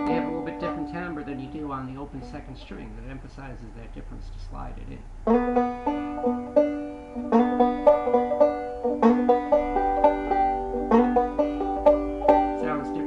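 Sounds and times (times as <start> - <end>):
banjo plucked notes: 0.0 - 3.2, 5.2 - 13.0.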